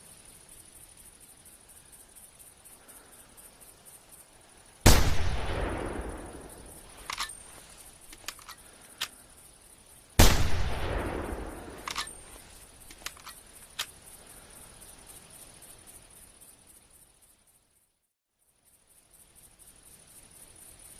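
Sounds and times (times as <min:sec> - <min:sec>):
crickets chirping: 0:00.0 - 0:20.9
rifle shots with echo: 0:04.9 - 0:07.3, 0:10.2 - 0:12.3
rifle bolt clicking: 0:07.0 - 0:07.4, 0:08.1 - 0:09.1, 0:11.8 - 0:12.2, 0:12.8 - 0:13.9.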